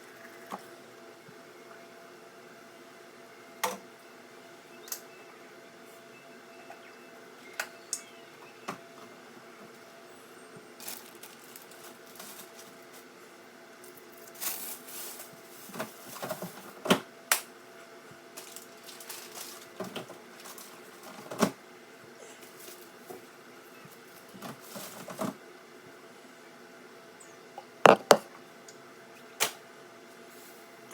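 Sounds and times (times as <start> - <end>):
food containers knocking on shelves: 27.9 - 28.3.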